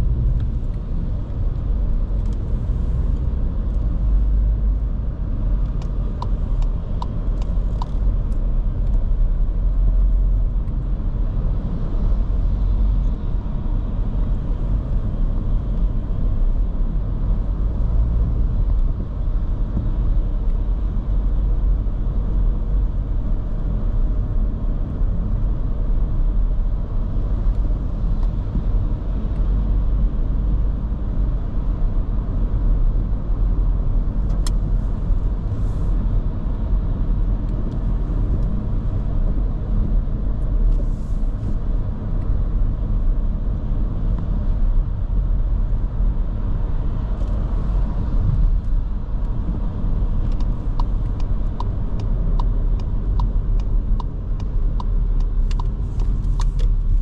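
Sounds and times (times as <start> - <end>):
car engine running: 0.0 - 57.0
tyre and road noise: 0.0 - 57.0
light ticks: 5.6 - 9.0, 50.2 - 56.8.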